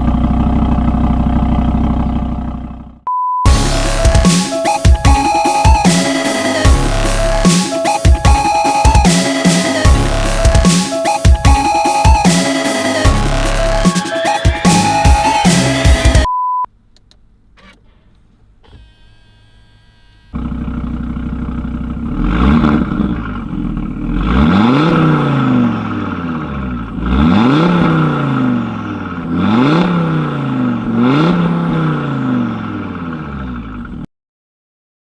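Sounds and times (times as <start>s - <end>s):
car engine idling and revving: 0.0s - 34.1s
short beep: 3.1s - 3.6s, 16.2s - 16.7s
electronic music: 3.5s - 16.3s.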